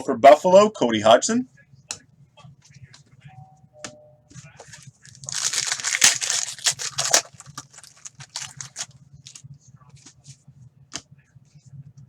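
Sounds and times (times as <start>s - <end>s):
cards clicking and rustling: 5.1s - 9.4s
foil wrapper tearing and crinkling: 5.1s - 9.4s.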